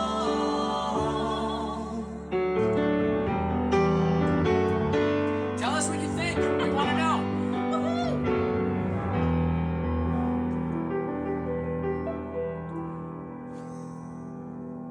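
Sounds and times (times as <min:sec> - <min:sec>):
person singing with vibrato: 0:00.0 - 0:02.3
sustained piano chords: 0:00.0 - 0:14.9.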